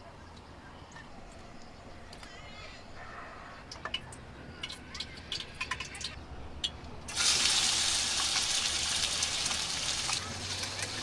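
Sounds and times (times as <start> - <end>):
water pouring: 7.1 - 11.0.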